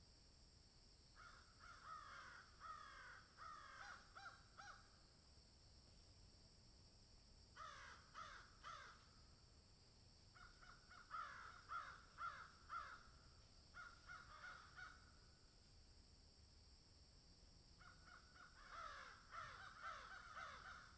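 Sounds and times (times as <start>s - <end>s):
crows cawing: 1.2s - 4.9s, 7.6s - 9.1s, 10.4s - 15.2s, 17.8s - 20.9s.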